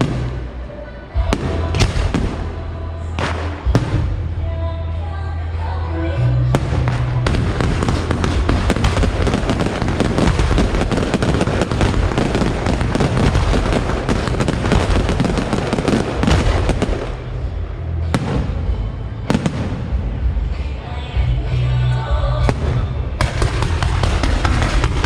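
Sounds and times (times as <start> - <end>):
sharp fireworks bangs: 1.2 - 2.6, 6.5 - 17.5, 22.4 - 25.0
fireworks crackling and popping: 6.5 - 17.6, 22.4 - 25.0.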